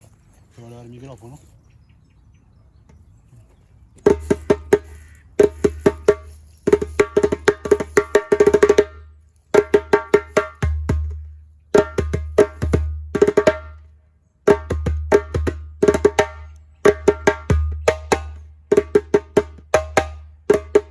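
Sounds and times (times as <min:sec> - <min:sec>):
djembe played by hand: 0:04.0 - 0:13.8, 0:14.4 - 0:20.9.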